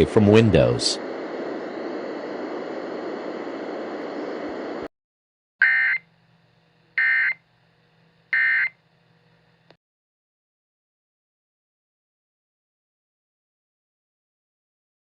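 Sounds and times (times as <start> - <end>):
radio static: 0.0 - 4.9
digital data tone bursts: 7.0 - 7.4, 8.4 - 8.7.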